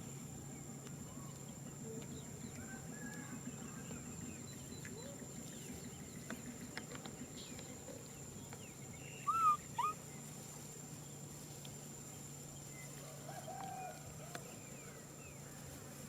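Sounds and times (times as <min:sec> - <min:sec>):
faint chirps: 0:01.0 - 0:10.4
arched animal calls: 0:09.2 - 0:10.0.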